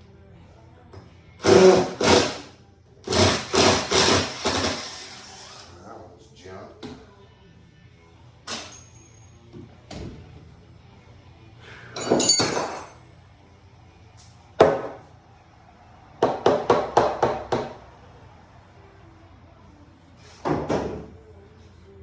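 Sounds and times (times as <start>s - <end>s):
metallic clank and ringing: 8.5s - 9.5s, 12.0s - 13.3s.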